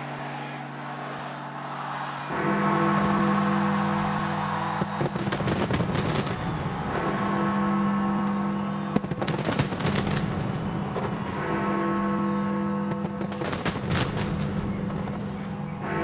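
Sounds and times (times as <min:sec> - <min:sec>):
fireworks bangs and crackles: 0:04.5 - 0:07.4, 0:08.4 - 0:11.6, 0:12.9 - 0:15.6.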